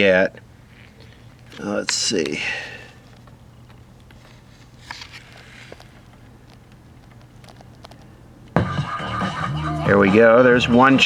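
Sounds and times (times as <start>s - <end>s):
light clicks and taps: 3.0s - 8.6s.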